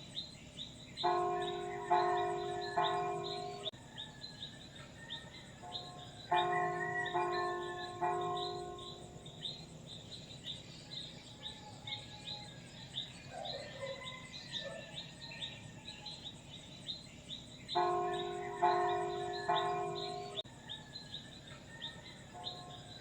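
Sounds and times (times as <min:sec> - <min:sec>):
church bell ringing: 0:01.0 - 0:03.8, 0:05.6 - 0:10.0, 0:17.7 - 0:20.5.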